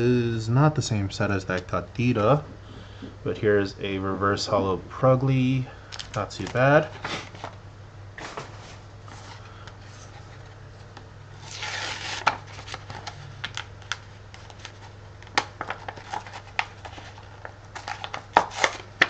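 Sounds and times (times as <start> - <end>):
steady low hum: 0.0 - 19.0
trading cards rustling: 11.4 - 19.0.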